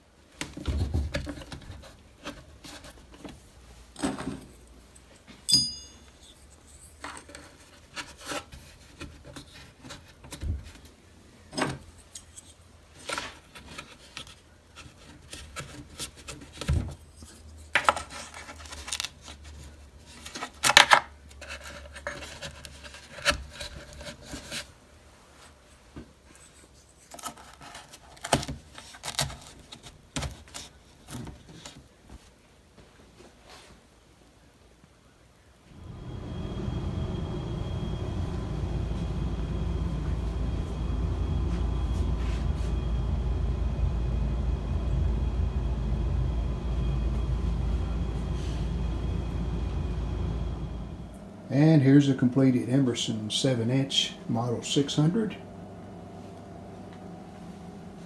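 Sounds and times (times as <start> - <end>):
short metallic ping: 5.5 - 6.3.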